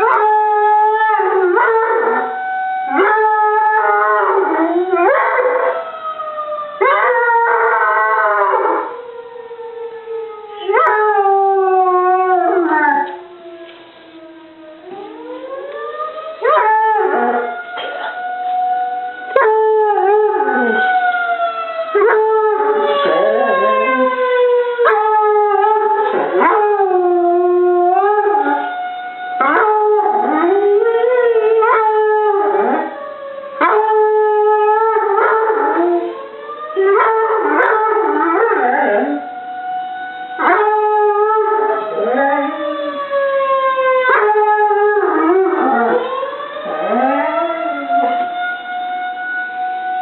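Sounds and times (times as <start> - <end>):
dog howling: 0.0 - 5.9, 19.1 - 21.1, 21.9 - 28.8, 29.4 - 33.0, 33.6 - 39.3, 40.4 - 43.0, 44.0 - 48.4
tornado siren wailing: 0.0 - 50.0.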